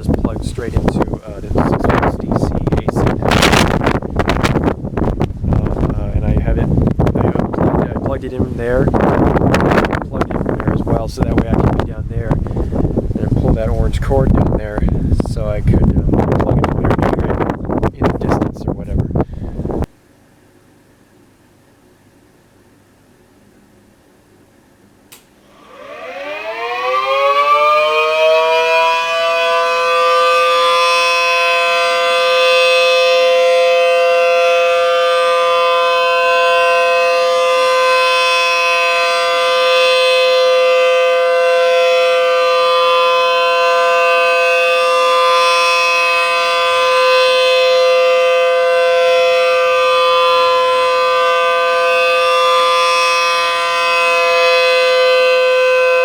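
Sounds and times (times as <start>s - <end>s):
tornado siren wailing: 0.0s - 18.6s, 25.5s - 56.0s
click: 25.1s - 25.3s.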